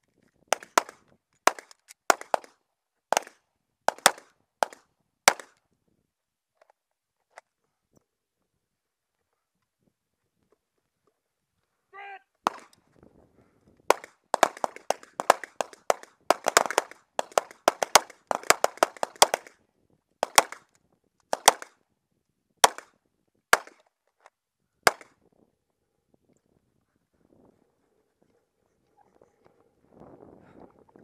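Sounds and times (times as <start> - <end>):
pistol shots: 0.5 - 2.5, 3.1 - 5.5, 12.5 - 12.7, 13.9 - 19.5, 20.2 - 20.7, 21.3 - 21.7, 22.6 - 22.9, 23.5 - 23.8, 24.9 - 25.1.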